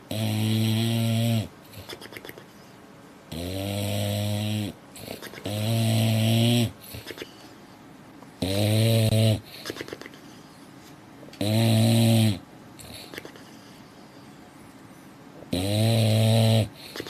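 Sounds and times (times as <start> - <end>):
dog snoring: 0.0 - 2.4, 3.3 - 7.4, 8.4 - 10.2, 11.3 - 13.6, 15.4 - 17.0
quiet dog breathing: 12.8 - 15.3.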